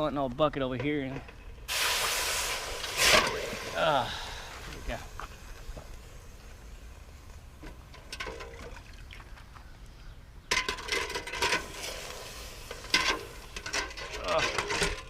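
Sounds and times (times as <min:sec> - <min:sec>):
hot metal sizzling in water: 0:01.7 - 0:05.2, 0:11.2 - 0:14.4.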